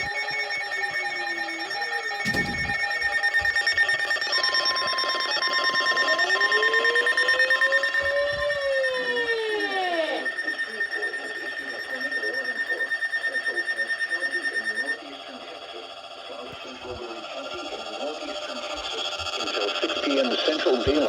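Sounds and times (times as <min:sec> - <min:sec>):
electronic alarm tones: 0:00.0 - 0:21.0
short thump: 0:02.2 - 0:02.8.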